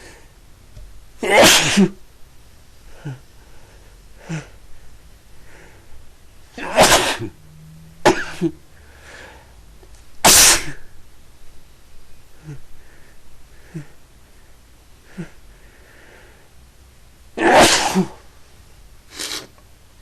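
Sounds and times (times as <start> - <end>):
person sneezing: 1.2 - 2.0, 6.6 - 7.4, 8.0 - 8.6, 10.2 - 10.9, 17.4 - 18.3, 19.1 - 19.6.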